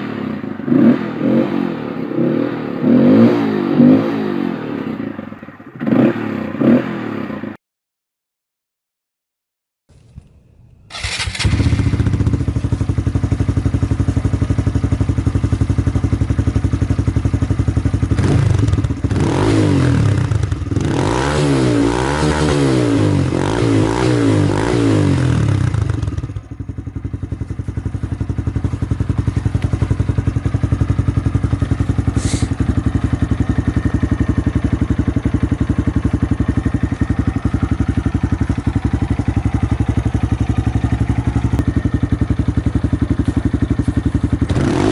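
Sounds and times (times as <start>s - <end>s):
motorcycle engine idling and revving: 0.0s - 7.6s, 9.9s - 44.9s.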